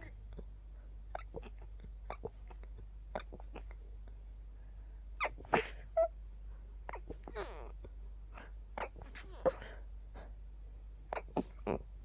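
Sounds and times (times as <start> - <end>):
loud sharp sneeze: 5.2 - 5.9
person stifling sneezes: 5.2 - 6.0.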